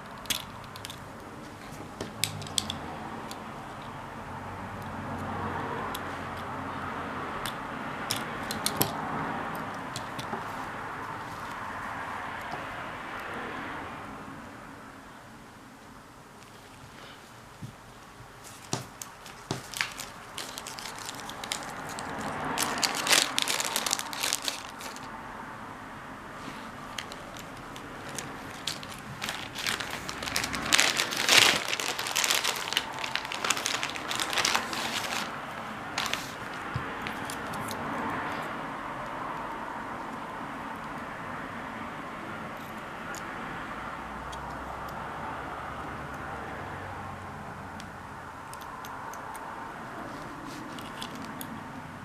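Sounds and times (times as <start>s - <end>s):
crinkling and sharp clicks: 0.0s - 3.9s, 7.4s - 10.5s, 17.6s - 25.2s, 26.8s - 38.4s.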